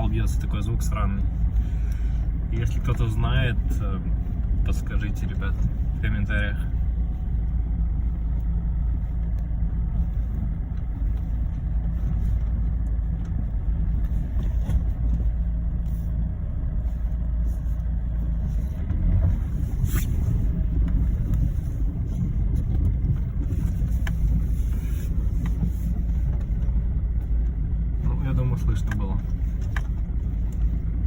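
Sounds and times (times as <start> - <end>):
road and engine rumble: 0.0 - 31.0.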